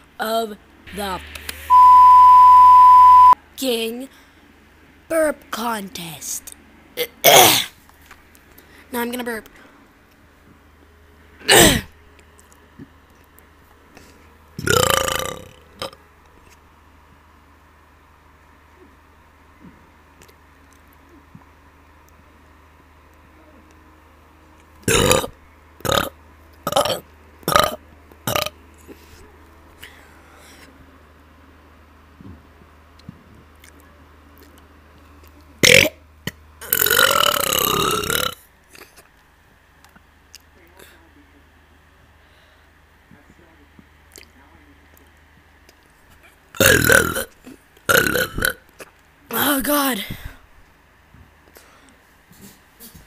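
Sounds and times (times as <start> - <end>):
person burping: 7.0 - 7.7, 11.5 - 11.9, 14.6 - 16.0, 24.8 - 26.1, 26.7 - 28.5, 35.6 - 36.0, 36.6 - 38.9, 46.6 - 48.6.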